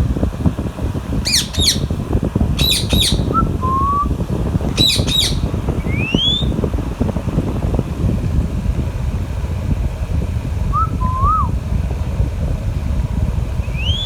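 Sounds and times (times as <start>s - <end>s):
low rumble: 0.0s - 14.0s
parakeet squawking: 1.2s - 2.0s, 2.6s - 3.6s, 4.7s - 6.5s
parakeet whistling: 1.2s - 2.0s, 2.6s - 4.1s, 4.7s - 6.6s, 13.7s - 14.0s.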